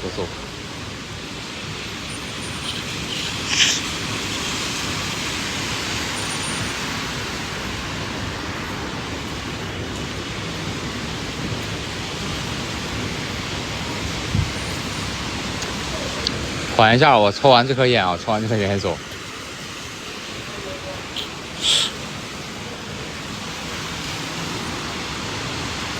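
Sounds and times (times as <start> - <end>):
rain falling: 0.0 - 25.9.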